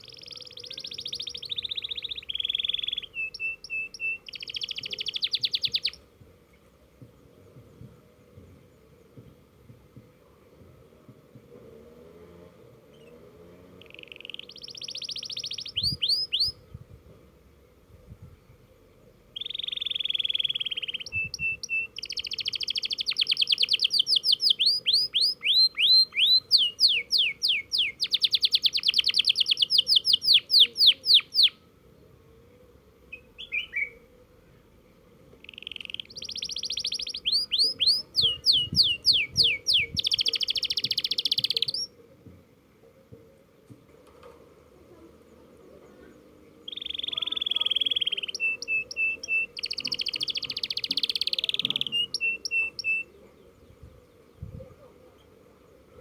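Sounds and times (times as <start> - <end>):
canary singing trills: 0.0 - 6.1, 12.9 - 16.8, 18.8 - 31.6, 33.1 - 34.1, 35.3 - 42.0, 45.3 - 55.8.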